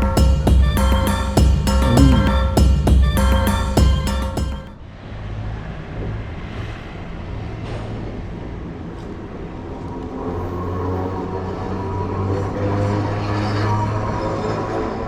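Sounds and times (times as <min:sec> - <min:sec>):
background music: 0:00.0 - 0:04.8
running vehicle rumble and hiss: 0:04.8 - 0:15.0.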